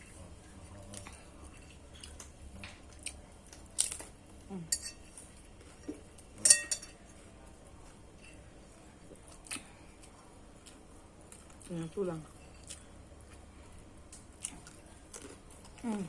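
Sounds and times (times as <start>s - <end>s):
cutlery clinking on tableware: 4.7s - 5.2s, 5.8s - 7.1s.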